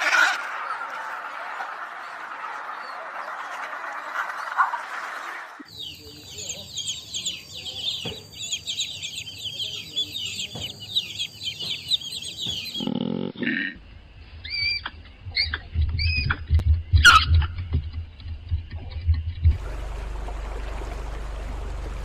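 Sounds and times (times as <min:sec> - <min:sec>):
chicks peeping: 0:05.7 - 0:12.9
high chirps: 0:05.7 - 0:13.0.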